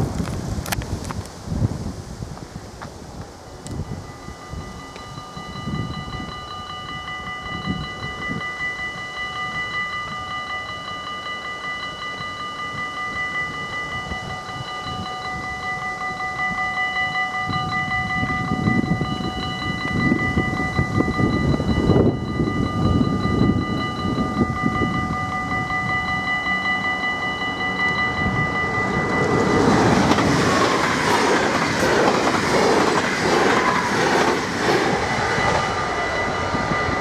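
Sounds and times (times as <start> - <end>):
level crossing warning bells: 3.4 - 37.0
train rumble: 17.4 - 37.0.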